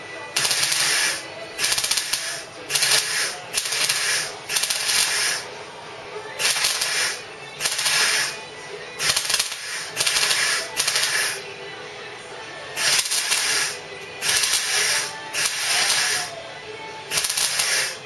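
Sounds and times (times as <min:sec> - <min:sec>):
welder crackling hiss bursts: 0:00.4 - 0:05.5, 0:06.4 - 0:08.4, 0:09.0 - 0:11.5, 0:12.8 - 0:16.4, 0:17.1 - 0:18.0.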